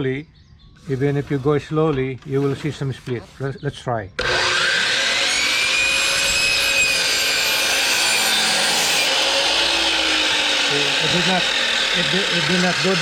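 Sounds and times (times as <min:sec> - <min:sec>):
miter saw cutting wood: 0:04.2 - 0:13.0.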